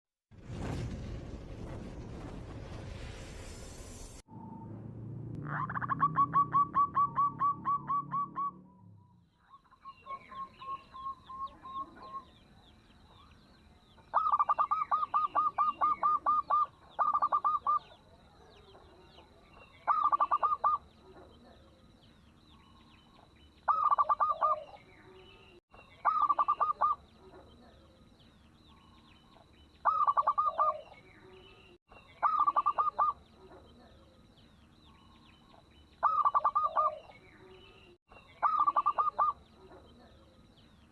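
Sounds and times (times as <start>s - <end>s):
dove cooing: 5.5s - 8.6s, 14.1s - 18.0s, 18.6s - 21.6s, 23.7s - 24.8s, 26.0s - 27.4s, 29.8s - 31.0s, 32.2s - 33.6s, 36.0s - 37.2s, 38.4s - 39.8s.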